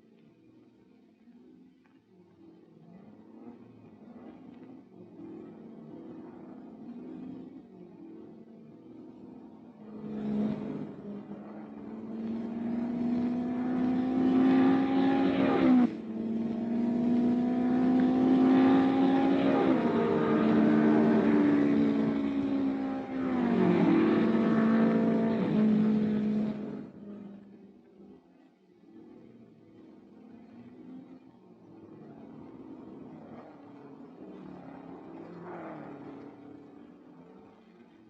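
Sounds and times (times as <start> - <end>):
racing car engine accelerating: 3.0 - 38.0.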